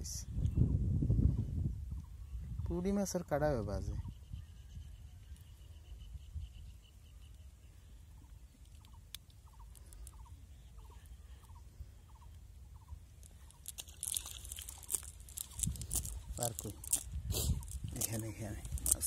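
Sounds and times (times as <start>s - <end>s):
faint chirping call: 3.9s - 18.6s
rustling and clicking crackle: 8.5s - 10.3s, 13.2s - 19.0s.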